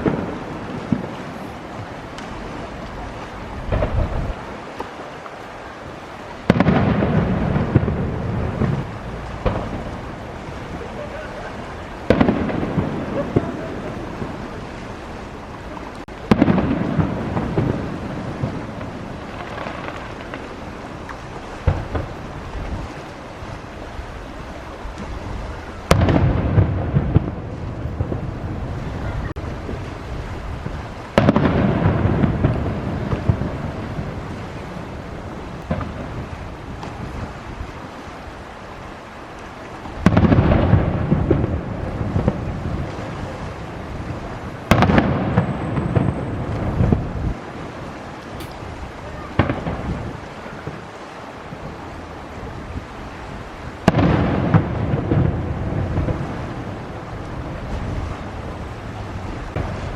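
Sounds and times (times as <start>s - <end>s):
small firework pops: 0.0s - 3.0s, 3.7s - 4.2s, 4.8s - 5.0s, 15.9s - 17.8s, 25.9s - 27.4s, 31.2s - 33.4s, 44.7s - 47.0s, 48.3s - 48.6s, 53.8s - 55.2s
crackling firework pops: 0.0s - 5.0s, 6.4s - 10.2s, 12.1s - 14.4s, 15.7s - 22.8s, 25.8s - 28.2s, 30.6s - 33.9s, 35.6s - 37.1s, 39.4s - 43.1s, 44.6s - 47.1s, 48.3s - 48.7s, 49.4s - 50.8s, 53.8s - 56.4s
fireworks rumbling reports: 0.0s - 59.9s
loud firework boom: 3.7s - 4.3s, 6.5s - 10.0s, 12.1s - 14.4s, 25.9s - 28.8s.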